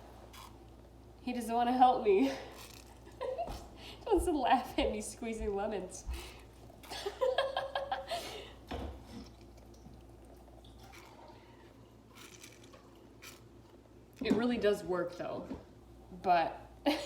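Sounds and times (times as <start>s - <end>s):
juice dripping: 6.1s - 14.3s
person laughing: 6.9s - 8.5s.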